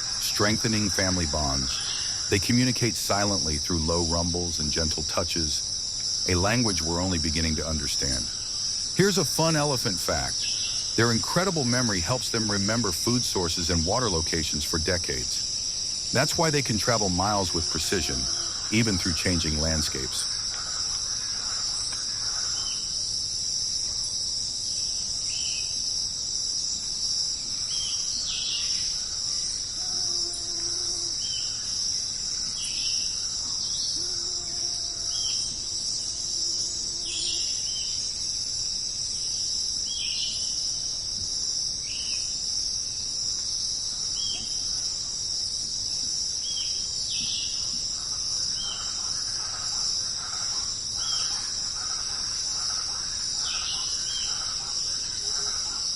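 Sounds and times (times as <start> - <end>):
insect chorus: 0.0 - 55.9.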